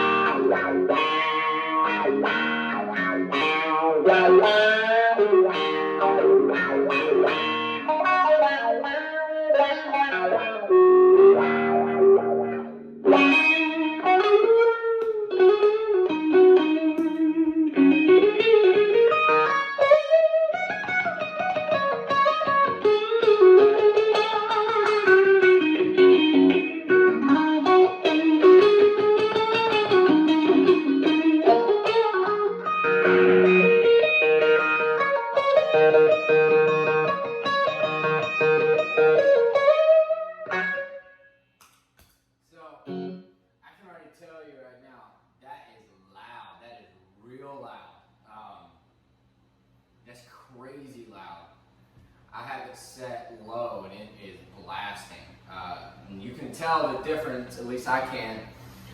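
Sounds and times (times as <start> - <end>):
electric guitar lead lines: 0.0 - 41.3, 42.8 - 43.3.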